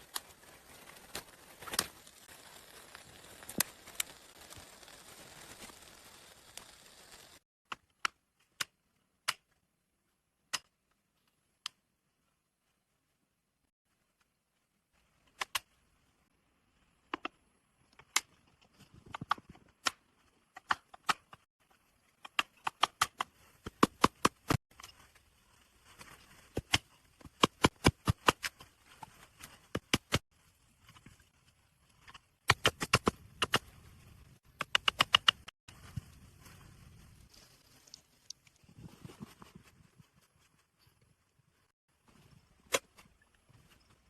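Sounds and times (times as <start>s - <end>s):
sharp snaps and clicks: 7.7s - 9.5s, 15.3s - 15.7s, 34.6s - 35.5s.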